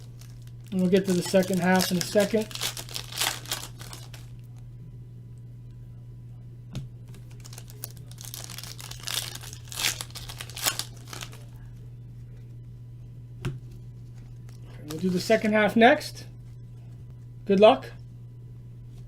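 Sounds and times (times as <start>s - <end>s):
card wrappers crinkling and tearing: 0.0s - 4.4s, 7.1s - 11.6s, 14.5s - 15.5s.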